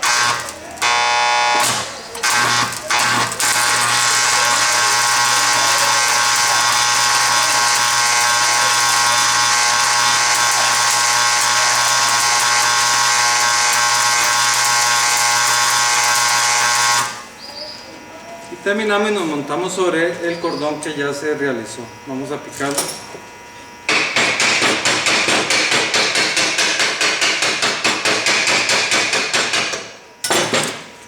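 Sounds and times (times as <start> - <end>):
welding arc crackling hiss: 0.0 - 17.4, 23.7 - 30.0.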